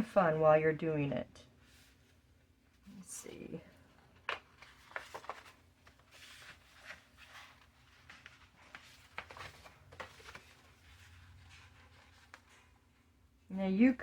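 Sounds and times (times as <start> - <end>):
low room hum: 0.0 - 14.0
paper rustling and tapping: 4.1 - 12.8.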